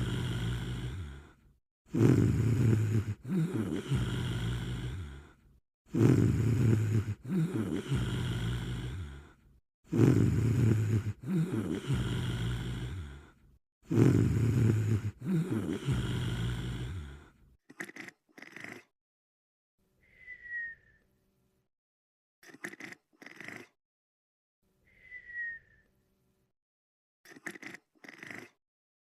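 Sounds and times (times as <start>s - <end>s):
sped up high-pitched snoring: 0.0s - 18.9s, 22.4s - 23.8s, 27.3s - 28.6s.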